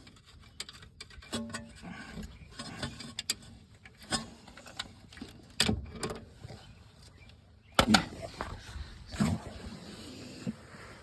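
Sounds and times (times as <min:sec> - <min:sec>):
metallic clicks of tools and bolt: 0:00.0 - 0:06.3.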